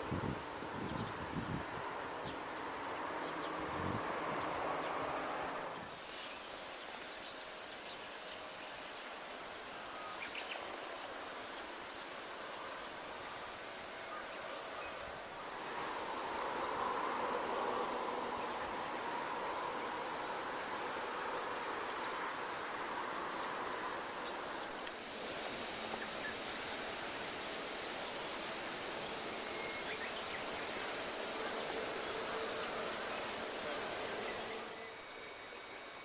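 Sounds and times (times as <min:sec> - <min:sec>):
insects chirring: 0:00.0 - 0:36.0
high-pitched insect buzz: 0:13.0 - 0:36.0.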